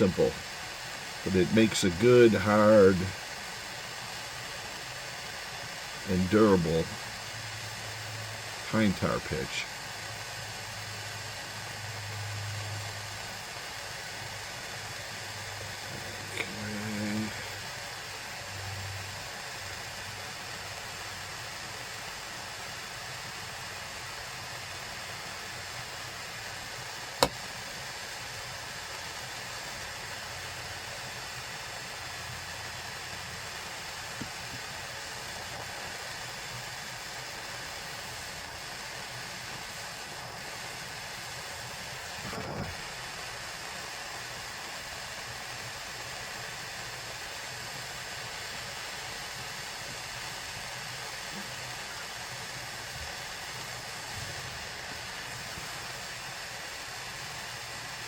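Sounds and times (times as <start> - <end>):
steady hiss: 0.0 - 58.0
sharp click: 27.2 - 27.4.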